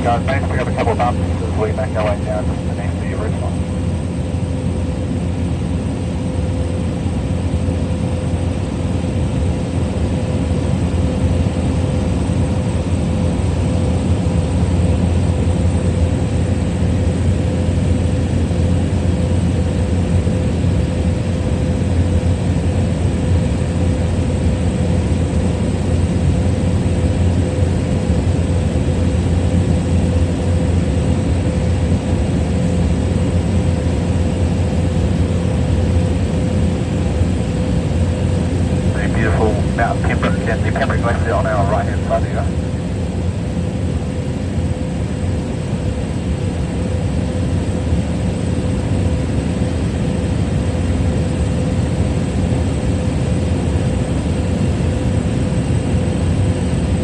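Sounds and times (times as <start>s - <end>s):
faint steady whine: 0.0s - 4.7s, 34.3s - 43.3s
propeller plane engine droning: 0.0s - 50.5s.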